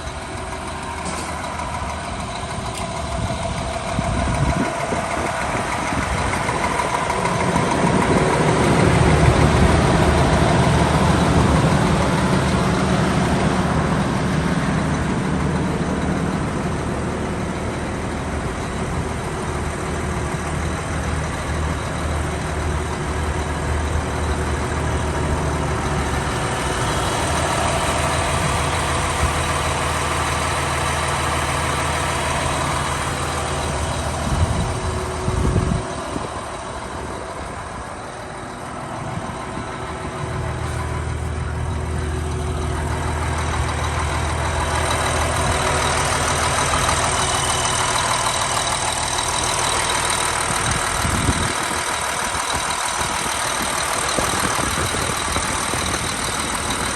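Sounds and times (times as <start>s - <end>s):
clunks: 0.0s - 16.8s
excavator diesel engine running: 0.0s - 56.9s.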